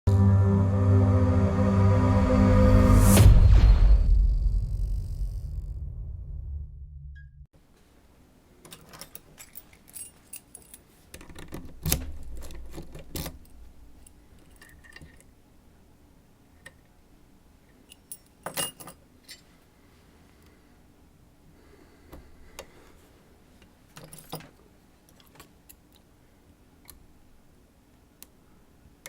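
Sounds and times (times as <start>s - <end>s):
small metal parts clinking: 8.6s - 15.3s, 17.8s - 19.5s.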